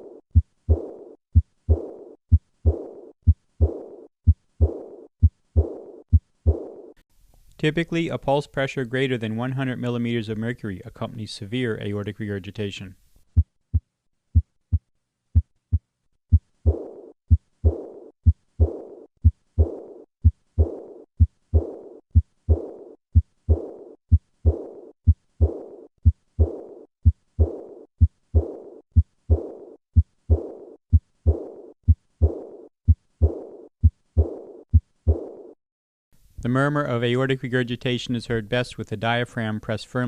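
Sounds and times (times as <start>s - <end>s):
heartbeat: 0.0s - 7.0s, 13.3s - 35.6s
high-pitched heart murmur: 0.0s - 7.0s, 14.4s - 35.5s.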